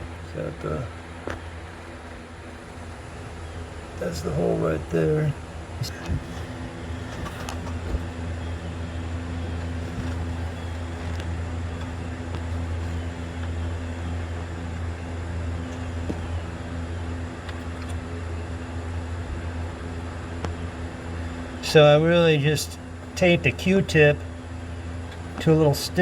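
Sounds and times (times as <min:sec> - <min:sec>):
low mechanical hum: 0:00.0 - 0:26.0.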